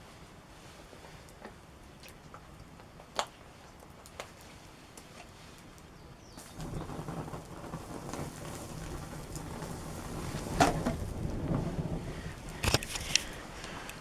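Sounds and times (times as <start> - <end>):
sharp crack: 6.4 - 14.0.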